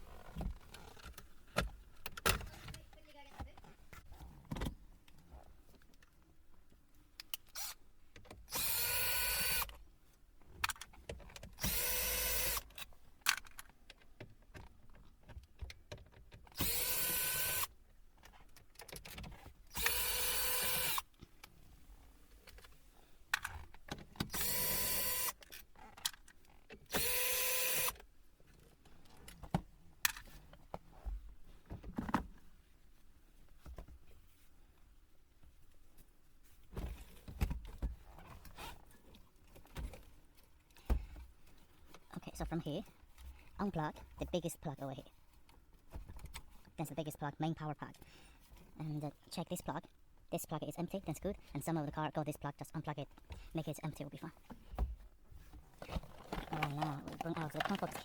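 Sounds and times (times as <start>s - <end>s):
electric screwdriver spinning: 8.5s - 9.7s, 11.6s - 12.6s, 16.6s - 17.7s, 19.8s - 21.0s, 24.3s - 25.4s, 26.9s - 28.0s
handling clicks and knocks: 54.5s - 58.0s.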